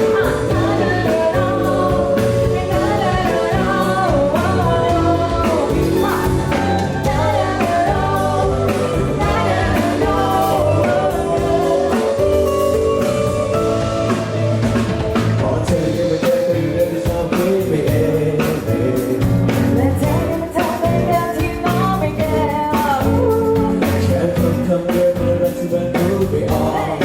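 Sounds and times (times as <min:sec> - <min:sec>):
wavering melodic lead: 0:00.0 - 0:17.1
live pop band playing: 0:00.0 - 0:27.0
steady drum beat: 0:00.0 - 0:27.0.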